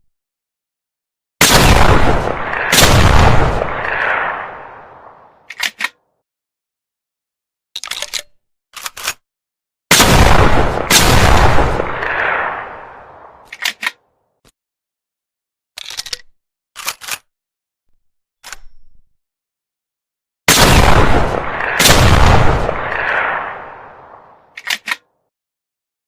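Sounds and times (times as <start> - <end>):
shotgun shots echoing: 1.4 - 5.3, 9.9 - 13.4, 20.5 - 24.4
sharp metallic clicks: 5.4 - 6.0, 7.8 - 9.2, 13.4 - 14.0, 24.5 - 25.0.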